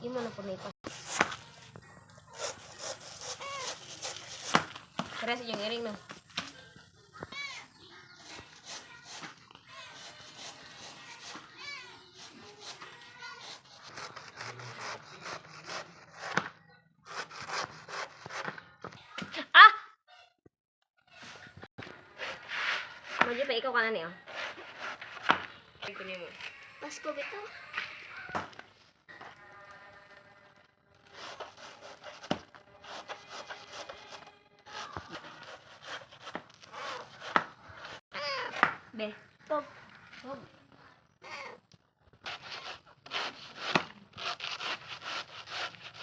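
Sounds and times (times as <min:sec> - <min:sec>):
banana rasping on a grater: 0:00.1 - 0:05.8, 0:07.4 - 0:16.4, 0:17.1 - 0:18.6, 0:24.2 - 0:25.3, 0:31.0 - 0:38.0, 0:42.2 - 0:46.0.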